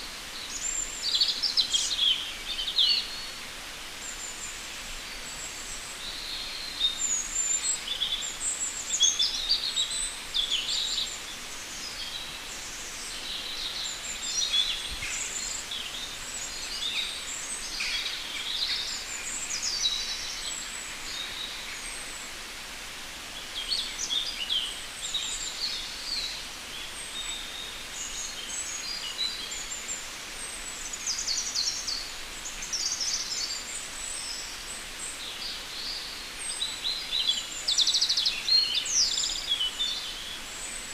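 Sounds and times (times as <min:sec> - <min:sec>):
steady hiss: 0:00.0 - 0:40.9
birds singing and chirping: 0:23.5 - 0:40.9.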